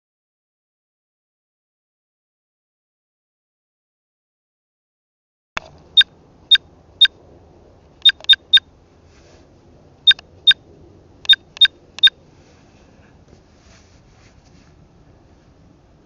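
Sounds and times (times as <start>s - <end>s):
short electronic beeps: 8.0s - 8.6s, 11.3s - 12.1s.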